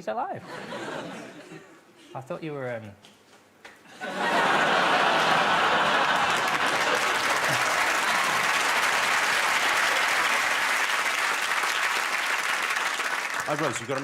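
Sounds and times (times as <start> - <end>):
audience applauding and cheering: 4.0 - 14.0.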